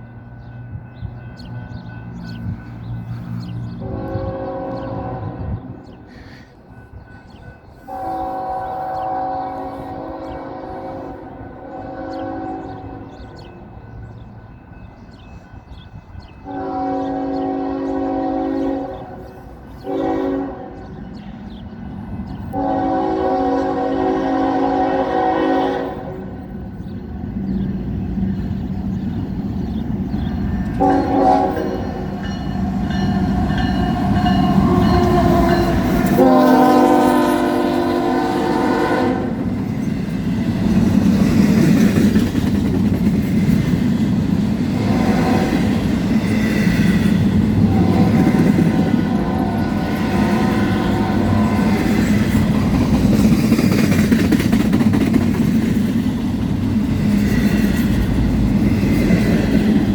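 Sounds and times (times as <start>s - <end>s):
train rumbling: 0.0s - 59.9s
locomotive horn blasts: 3.8s - 6.0s, 7.9s - 13.1s, 16.4s - 21.0s, 22.5s - 26.4s, 30.7s - 39.5s, 47.6s - 51.8s
wheels on rails: 39.4s - 59.9s.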